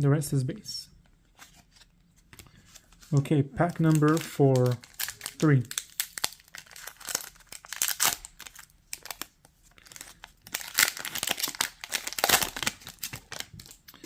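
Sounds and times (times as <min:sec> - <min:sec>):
wrapper tearing and crinkling: 0:03.6 - 0:14.0.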